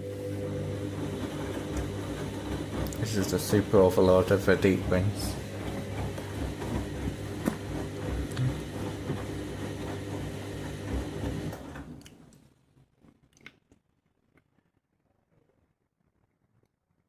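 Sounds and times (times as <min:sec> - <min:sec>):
washing machine motor hum: 0:00.0 - 0:12.3.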